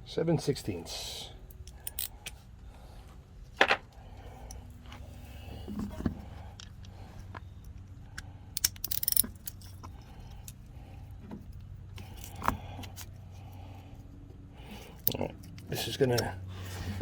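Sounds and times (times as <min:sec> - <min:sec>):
low steady hum: 0:00.0 - 0:17.0
metal hand tools clinking: 0:01.5 - 0:02.3, 0:08.6 - 0:09.9.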